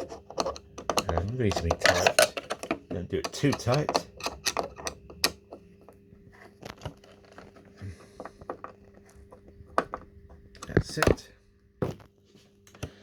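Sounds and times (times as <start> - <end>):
small parts clicking and knocking: 0.0 - 6.0
faint steady hum: 0.0 - 13.0.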